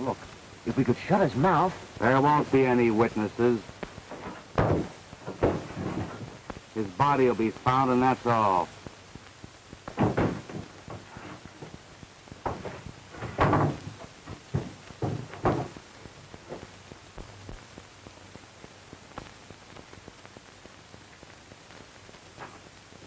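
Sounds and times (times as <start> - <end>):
old film soundtrack hiss: 0.0 - 23.0
knocks and thumps: 3.8 - 7.9, 9.8 - 17.7.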